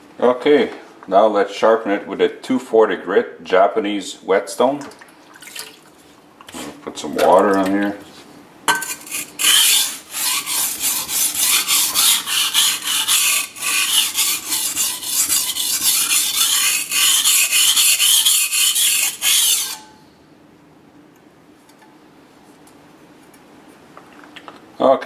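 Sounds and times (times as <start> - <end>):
knife scraping on whetstone: 8.7 - 20.0.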